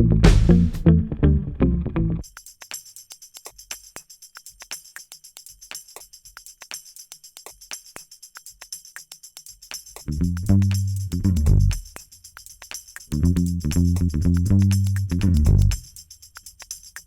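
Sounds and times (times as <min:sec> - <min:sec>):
deep instrument: 0:00.0 - 0:02.2, 0:10.1 - 0:11.8, 0:13.2 - 0:15.8
jingling tambourine percussion: 0:02.2 - 0:17.0.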